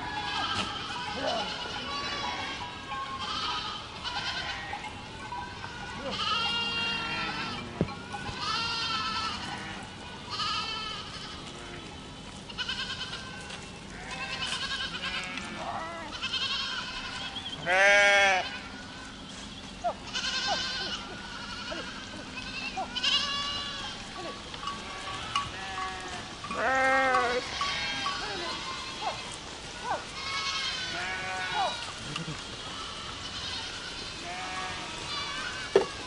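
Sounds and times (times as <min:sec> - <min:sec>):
goats bleating: 0:00.0 - 0:36.0.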